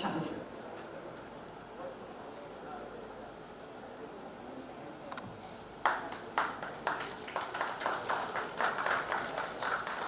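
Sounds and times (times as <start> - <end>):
people clapping: 5.8 - 10.0.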